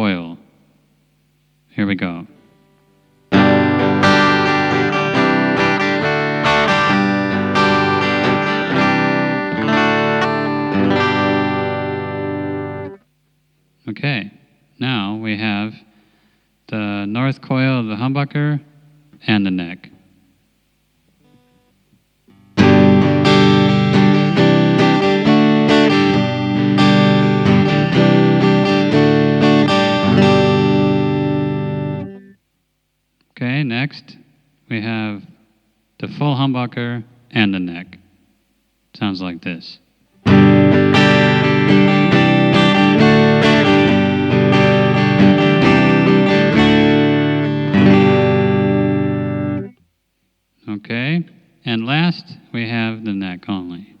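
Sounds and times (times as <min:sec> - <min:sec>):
electric guitar chords ringing: 0:02.5 - 0:13.1, 0:22.4 - 0:32.4, 0:40.2 - 0:49.8.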